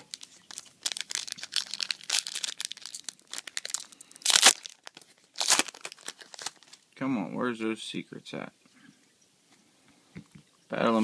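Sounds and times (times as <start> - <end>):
foil pack ripping open: 0.0 - 6.8
foil wrapper crinkling: 0.0 - 6.8.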